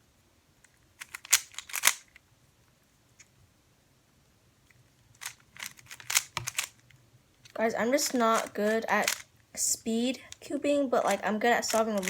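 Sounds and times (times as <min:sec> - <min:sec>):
puzzle cube plastic clacks: 0:00.7 - 0:02.2, 0:04.7 - 0:12.0.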